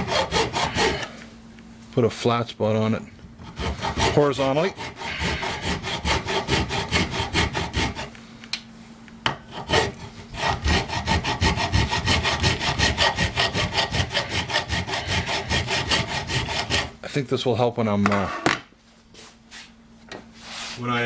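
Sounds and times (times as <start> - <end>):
hand file rasping: 0.0 - 1.2, 3.4 - 8.1, 9.5 - 17.0.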